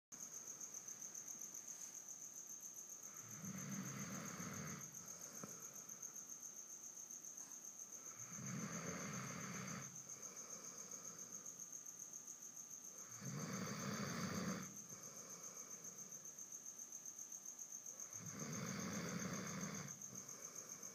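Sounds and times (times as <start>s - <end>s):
pet snoring: 3.1s - 5.7s, 8.0s - 11.5s, 13.0s - 16.0s, 18.0s - 20.9s.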